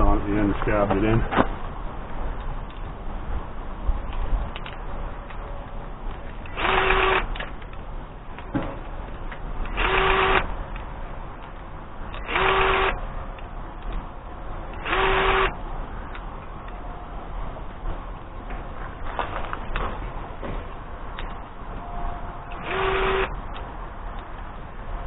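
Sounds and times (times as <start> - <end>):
power drill whirring: 6.5 - 7.3, 9.7 - 10.5, 12.2 - 13.0, 14.8 - 15.6, 22.5 - 23.3.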